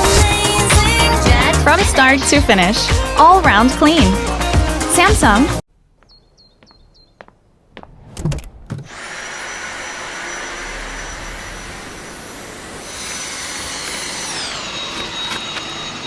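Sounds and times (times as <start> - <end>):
vacuum cleaner motor whining: 8.9 - 16.0.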